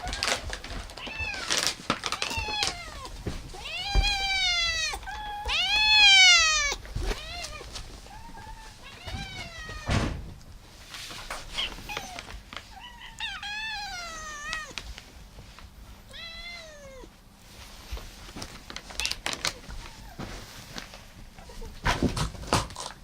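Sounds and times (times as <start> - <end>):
cat meowing: 0.0 - 9.9, 11.5 - 14.8, 16.1 - 17.1.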